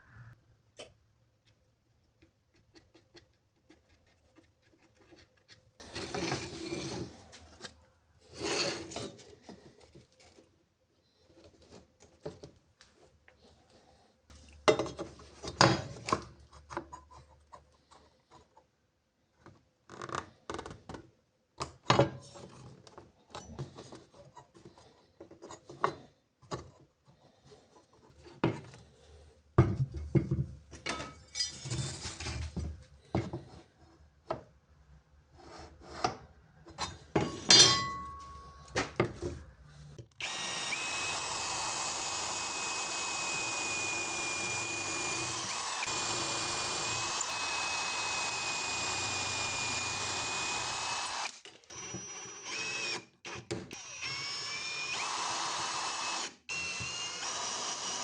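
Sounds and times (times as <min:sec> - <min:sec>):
power tool running: 0:40.2 - 0:58.0.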